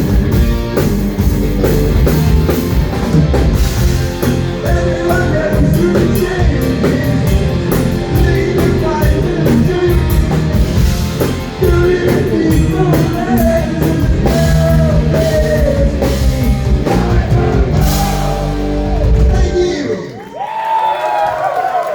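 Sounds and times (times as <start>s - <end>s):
heavy rock band playing: 0.0s - 20.0s
person singing: 4.6s - 10.4s, 11.6s - 20.1s.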